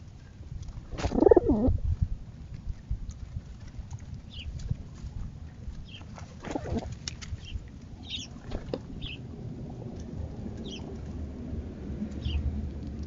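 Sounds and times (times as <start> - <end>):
low rumble: 6.5 - 13.0.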